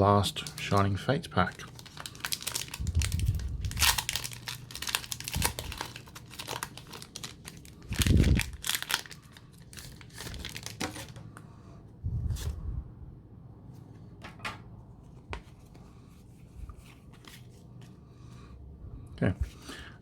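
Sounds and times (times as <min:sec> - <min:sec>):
foil wrapper crinkling and tearing: 0:00.3 - 0:11.2.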